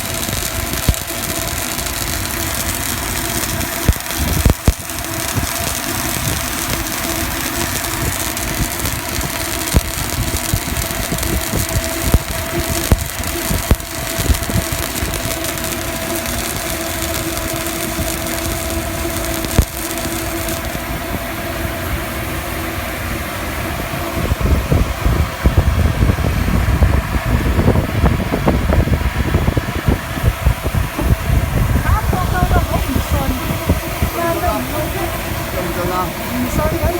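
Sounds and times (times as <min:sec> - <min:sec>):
uneven low rumble: 0:00.0 - 0:21.8
arc welding crackle: 0:00.0 - 0:36.9
welding machine humming: 0:00.0 - 0:36.9.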